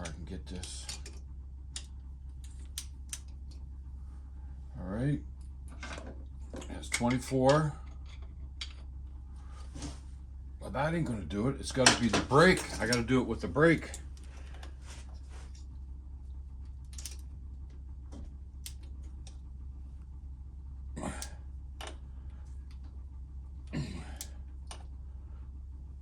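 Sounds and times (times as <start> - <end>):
low hum: 0.0 - 26.0
metal tool clicks and clinks: 16.9 - 17.2.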